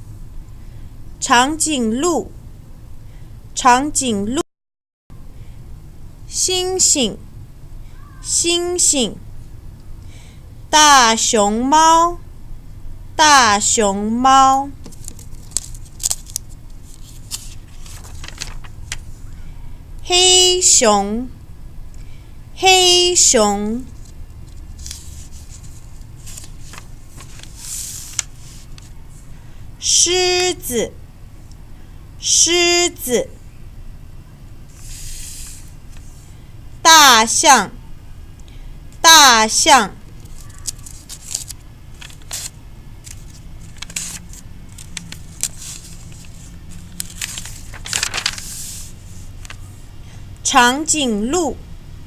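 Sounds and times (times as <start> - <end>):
low steady hum: 0.0 - 4.4, 5.1 - 52.0
soft rustling and rubbing: 14.8 - 19.2, 23.9 - 29.3, 34.7 - 36.3, 40.2 - 49.8
low hum: 16.8 - 20.1, 41.4 - 50.4.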